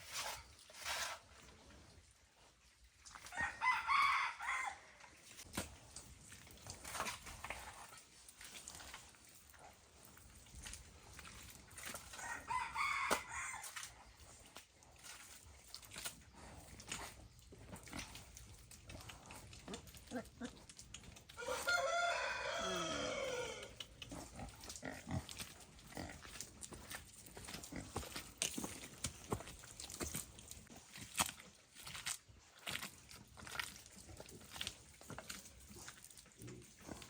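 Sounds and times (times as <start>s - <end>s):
rooster crowing: 3.4s - 4.8s, 12.2s - 13.6s, 21.4s - 23.8s.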